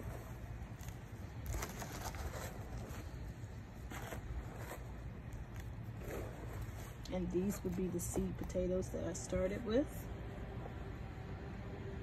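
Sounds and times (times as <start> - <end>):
hands digging through dry soil: 0.0 - 8.0
low steady rumble: 0.0 - 12.0.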